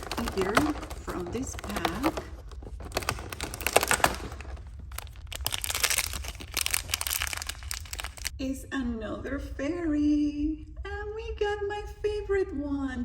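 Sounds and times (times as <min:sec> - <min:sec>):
toy packaging crinkling: 0:00.0 - 0:08.3.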